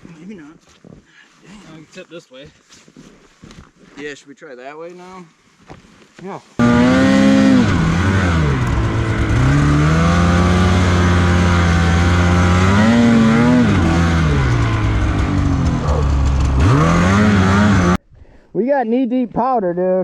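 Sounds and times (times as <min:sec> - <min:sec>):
snowmobile engine revving: 0:06.6 - 0:18.0.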